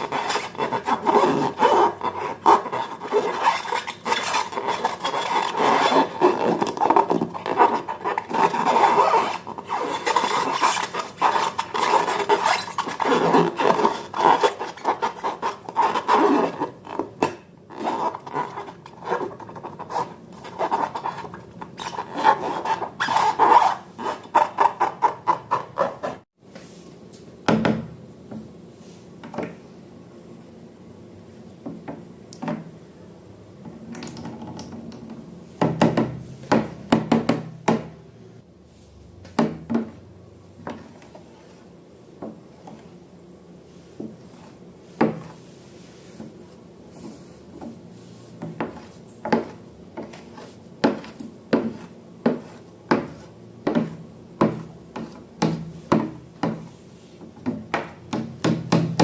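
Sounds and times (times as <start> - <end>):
rubbing: 0.0 - 17.0, 17.7 - 26.2
hard objects knocking and tapping: 35.6 - 38.0, 50.8 - 56.7, 57.4 - 59.0.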